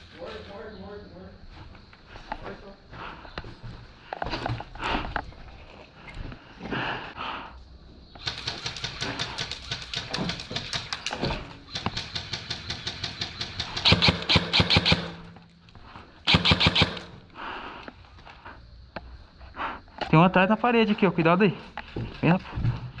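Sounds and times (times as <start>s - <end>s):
airsoft guns firing in bursts: 8.2s - 15.6s, 16.2s - 17.3s.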